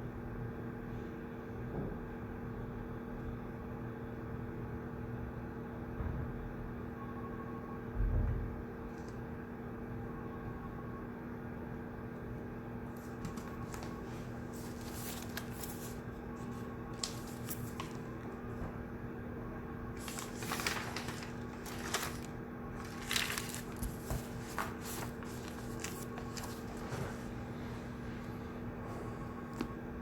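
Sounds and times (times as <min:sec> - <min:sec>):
low electrical hum: 0:00.0 - 0:30.0
paper rustling: 0:12.9 - 0:18.7, 0:19.9 - 0:28.0.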